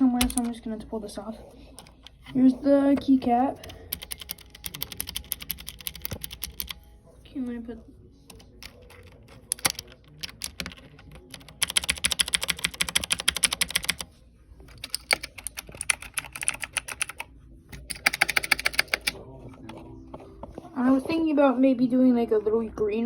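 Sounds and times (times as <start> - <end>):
mechanical keyboard key clicks: 8.6 - 14.0, 14.8 - 17.2, 17.8 - 19.2.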